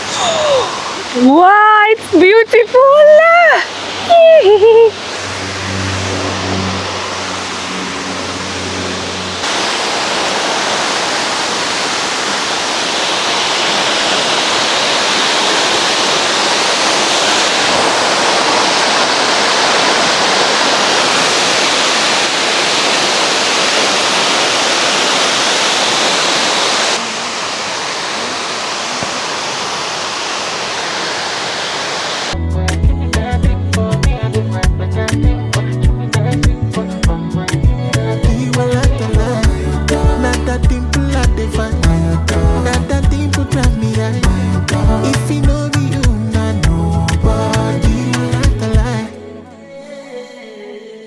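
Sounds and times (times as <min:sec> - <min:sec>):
waterfall rushing: 0:00.0 - 0:32.4.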